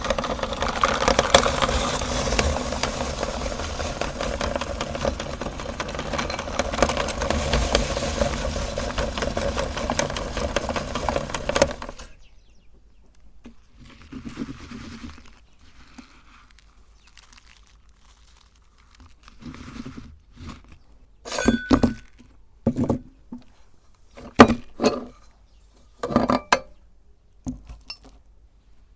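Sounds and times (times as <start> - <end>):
meat grinder crunching: 0.0 - 12.2.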